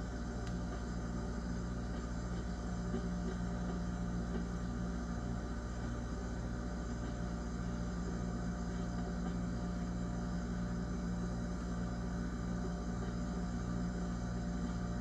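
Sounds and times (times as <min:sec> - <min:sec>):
refrigerator humming: 0:00.0 - 0:15.0.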